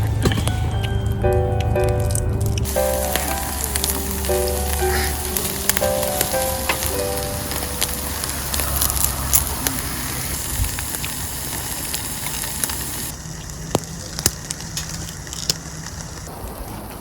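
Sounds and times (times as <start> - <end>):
wood fire crackling: 0.0 - 17.0.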